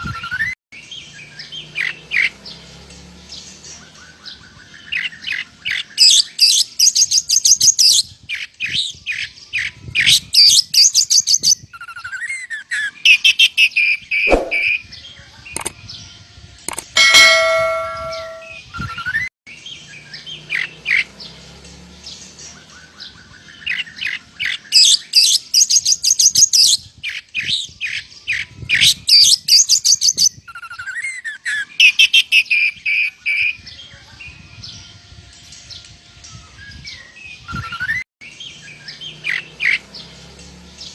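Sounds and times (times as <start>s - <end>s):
bird singing chirping trills: 0.1s - 16.4s, 17.0s - 40.9s
ringing tone: 17.0s - 18.6s.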